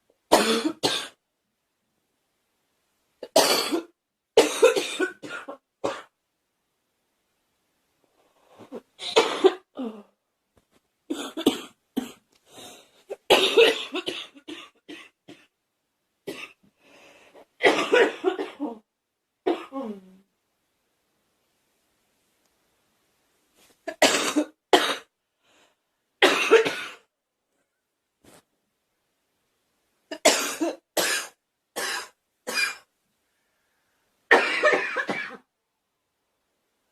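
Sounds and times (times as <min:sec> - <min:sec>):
girl coughing: 0:00.3 - 0:01.2, 0:03.3 - 0:06.1, 0:08.6 - 0:10.0, 0:13.1 - 0:15.5, 0:17.6 - 0:18.9, 0:23.9 - 0:25.1, 0:26.2 - 0:27.1, 0:30.1 - 0:32.9, 0:34.3 - 0:35.5.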